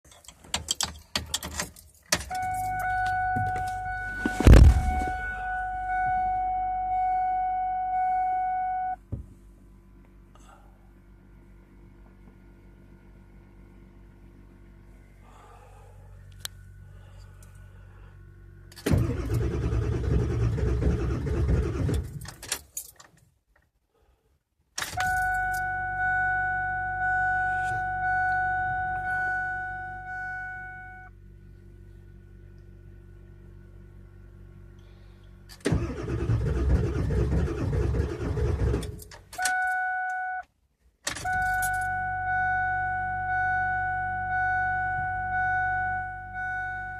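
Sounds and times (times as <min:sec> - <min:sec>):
diesel engine starter cranking: 0:00.1 - 0:06.0, 0:18.7 - 0:23.2, 0:24.8 - 0:25.8, 0:34.8 - 0:39.8.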